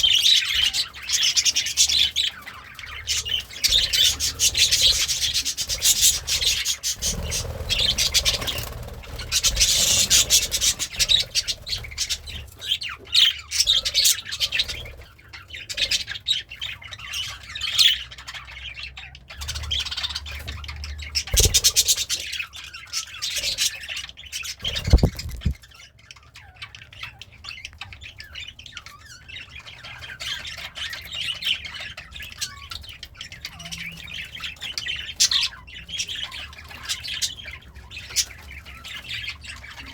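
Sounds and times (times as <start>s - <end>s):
budgerigar chattering: 23.0s - 25.6s.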